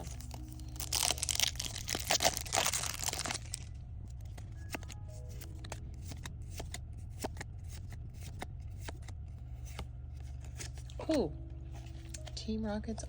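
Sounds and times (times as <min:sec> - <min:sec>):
foil wrapper crinkling and tearing: 0:00.0 - 0:04.9
cards clicking and rustling: 0:00.0 - 0:11.2
faint background music: 0:00.0 - 0:13.0.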